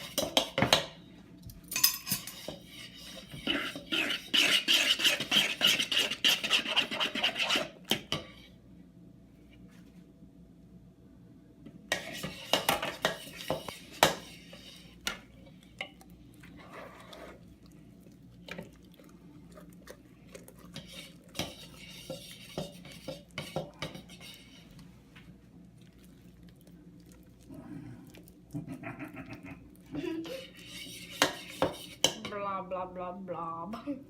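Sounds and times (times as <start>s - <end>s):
utensil clinking and scraping bowl: 0.0s - 1.0s, 1.6s - 8.5s, 11.9s - 17.6s, 19.5s - 24.9s, 30.0s - 32.5s.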